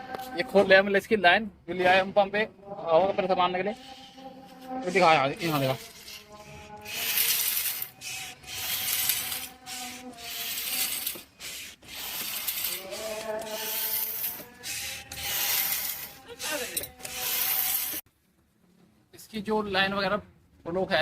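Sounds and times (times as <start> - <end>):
compressed air hissing: 5.4 - 18.0.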